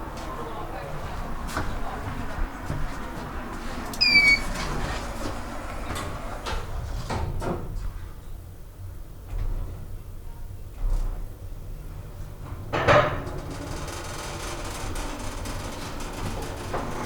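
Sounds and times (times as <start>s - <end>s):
elevator hum: 0.0s - 6.8s
high squeak: 4.0s - 4.7s.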